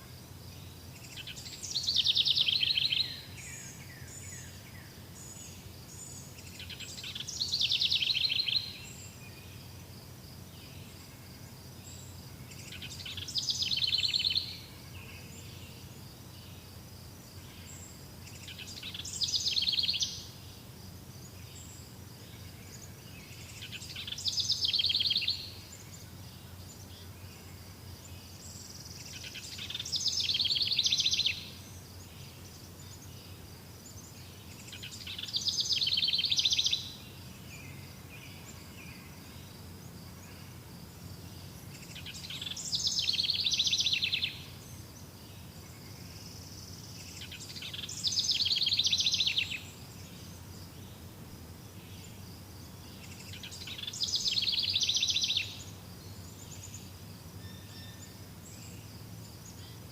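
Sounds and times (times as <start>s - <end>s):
songbird trilling: 1.1s - 4.5s, 6.0s - 9.2s, 18.4s - 20.4s, 23.4s - 25.6s, 29.0s - 31.6s, 34.6s - 37.0s, 41.7s - 44.6s, 46.0s - 49.8s, 52.9s - 55.7s.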